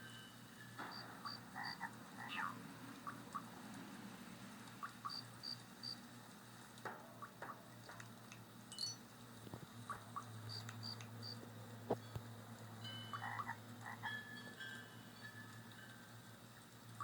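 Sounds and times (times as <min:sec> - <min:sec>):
low steady hum: 0:00.0 - 0:17.0
insects chirping: 0:00.7 - 0:02.6, 0:05.0 - 0:06.0, 0:09.8 - 0:11.4
frogs croaking: 0:00.8 - 0:03.6, 0:04.8 - 0:06.0, 0:09.8 - 0:12.1, 0:13.1 - 0:14.8.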